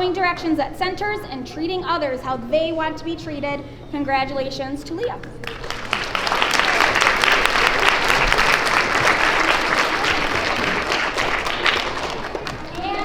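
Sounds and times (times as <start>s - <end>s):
audience applauding: 5.2s - 13.0s.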